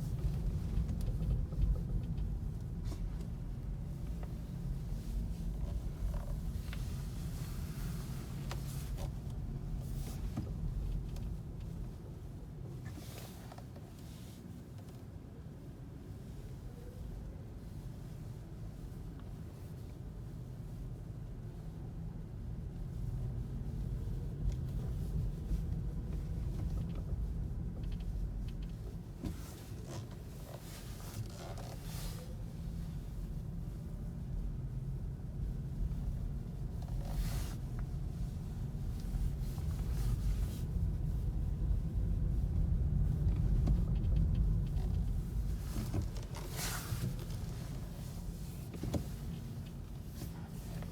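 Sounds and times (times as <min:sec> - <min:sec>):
car cabin low rumble: 0:00.0 - 0:50.9
faint ticks and creaks: 0:00.1 - 0:03.4, 0:05.0 - 0:07.1, 0:25.6 - 0:32.3, 0:38.9 - 0:48.1.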